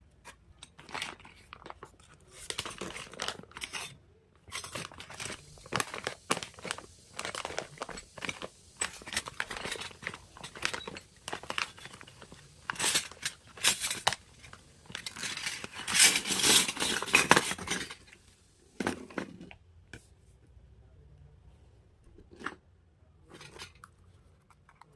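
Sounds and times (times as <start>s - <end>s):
plastic packaging crinkling and tearing: 0.8s - 3.9s, 4.5s - 18.2s.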